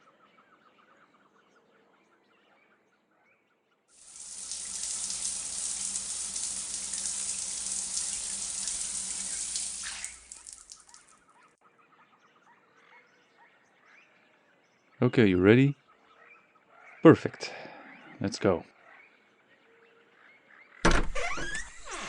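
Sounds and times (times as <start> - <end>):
water running from a tap: 4.0 - 11.1.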